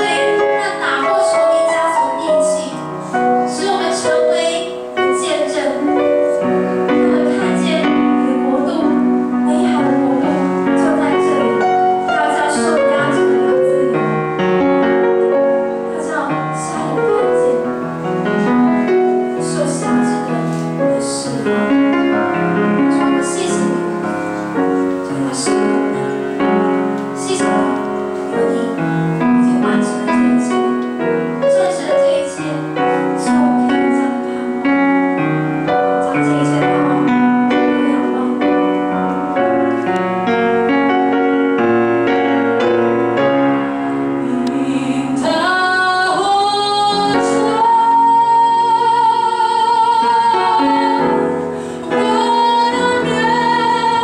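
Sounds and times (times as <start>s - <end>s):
live piano music: 0.0s - 54.0s.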